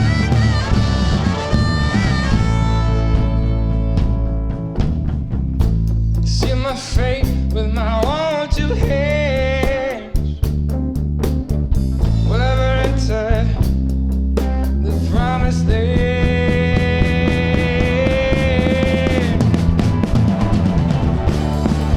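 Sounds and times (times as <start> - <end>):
lead guitar bent notes: 0.0 - 5.4, 16.5 - 21.9
rock band playing: 0.0 - 21.9.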